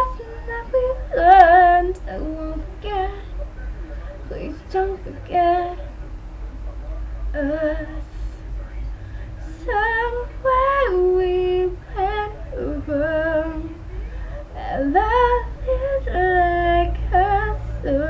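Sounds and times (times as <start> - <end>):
woman singing wordless notes: 0.0 - 3.3, 4.3 - 5.9, 7.4 - 8.0, 9.6 - 13.8, 14.5 - 18.0
steady low hum: 0.0 - 18.0.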